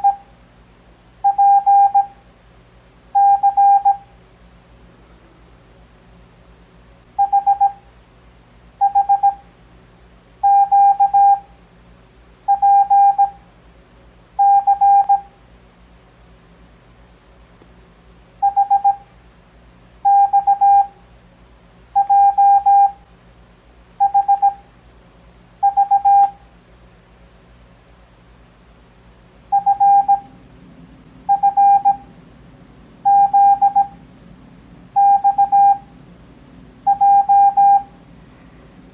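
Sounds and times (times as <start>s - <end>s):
morse code beeps: 0.0s - 0.3s, 1.2s - 2.2s, 3.2s - 4.1s, 7.2s - 7.8s, 8.8s - 9.4s, 10.4s - 11.5s, 12.5s - 13.4s, 14.4s - 15.3s, 18.4s - 19.0s, 20.0s - 20.9s, 22.0s - 23.0s, 24.0s - 24.6s, 25.6s - 26.4s, 29.5s - 30.3s, 31.3s - 32.1s, 33.0s - 34.0s, 35.0s - 35.9s, 36.8s - 37.9s
faint steady hum: 0.0s - 38.9s.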